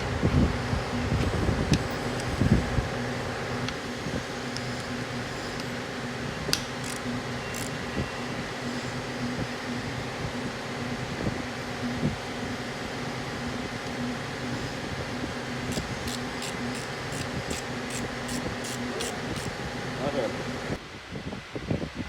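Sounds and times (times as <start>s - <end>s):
mechanical hum: 0.0s - 22.0s.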